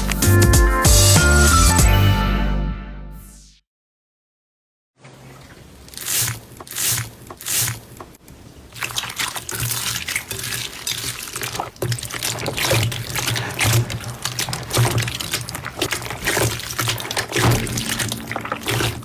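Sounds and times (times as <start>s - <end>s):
slime squelching: 5.2s - 19.0s.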